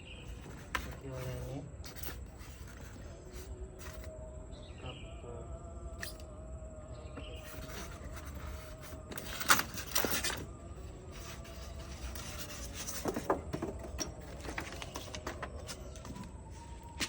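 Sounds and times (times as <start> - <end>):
faint steady hum: 0.0 - 17.0
packaging rustling and knocking: 11.2 - 16.4.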